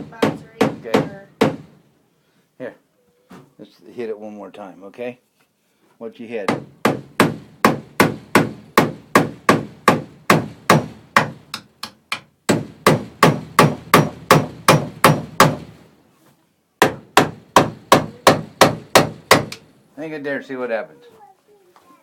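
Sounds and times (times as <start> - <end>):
hammer striking a nail: 0.0 - 1.7, 6.5 - 15.8, 16.8 - 19.6.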